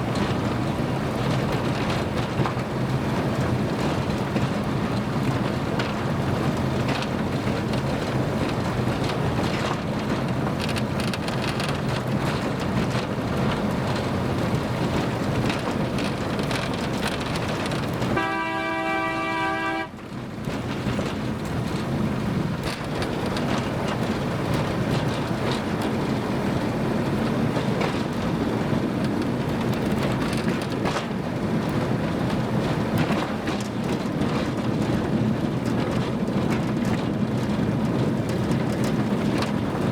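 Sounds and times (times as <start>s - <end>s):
train rumbling and clattering: 0.0s - 39.9s
train horn blast: 18.1s - 20.0s.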